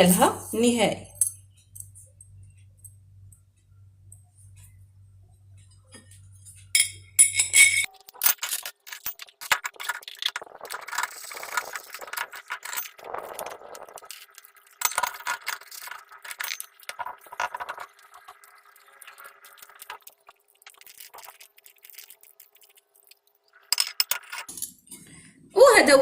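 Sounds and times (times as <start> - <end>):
serving stand parts clinking: 6.8 - 9.3.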